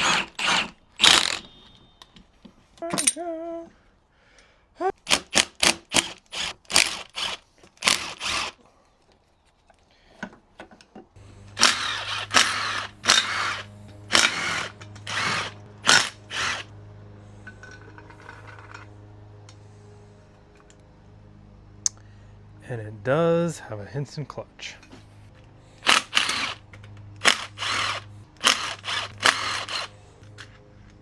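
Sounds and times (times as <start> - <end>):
power tool bursts: 0.0 - 1.6, 5.1 - 8.6, 11.5 - 16.7, 25.8 - 26.6, 27.2 - 30.0.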